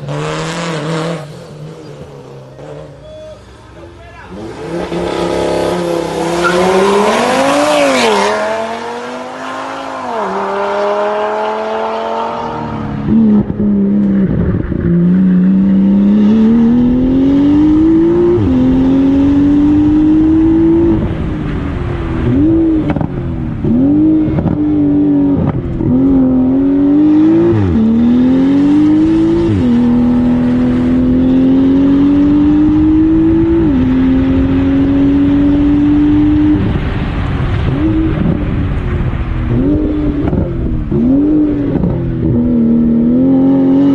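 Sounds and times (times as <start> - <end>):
race car accelerating through gears: 4.3 - 21.3, 22.2 - 36.8.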